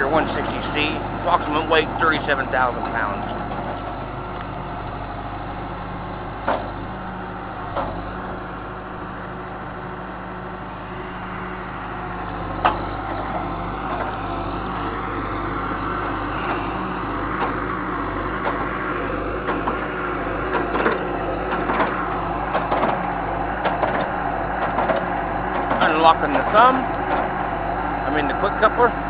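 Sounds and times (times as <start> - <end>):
excavator diesel engine running: 0.0 - 29.0
metal knocks: 5.8 - 8.7, 16.4 - 27.5.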